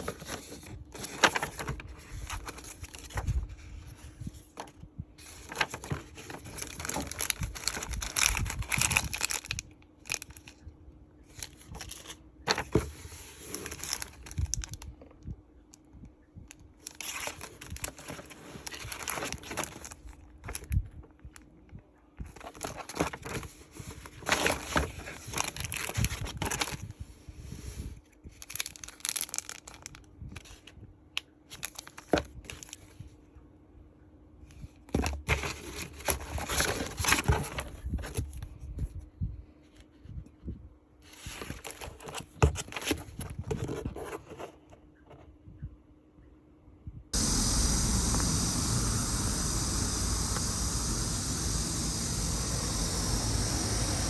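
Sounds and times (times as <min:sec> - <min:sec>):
packaging crinkling and tearing: 0:05.4 - 0:10.6, 0:13.5 - 0:14.8, 0:28.5 - 0:30.0.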